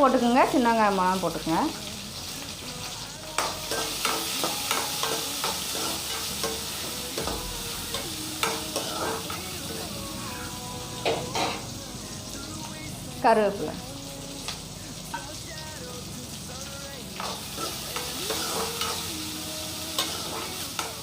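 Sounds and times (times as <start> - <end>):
food sizzling in hot oil: 0.0 - 21.0
spatula scraping and tapping pan: 3.4 - 9.5.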